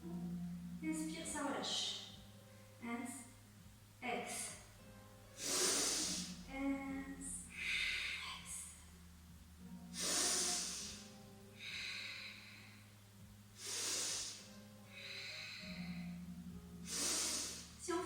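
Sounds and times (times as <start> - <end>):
woman breathing loudly: 5.4 - 6.5, 7.5 - 8.4, 10.0 - 13.0, 13.6 - 17.8.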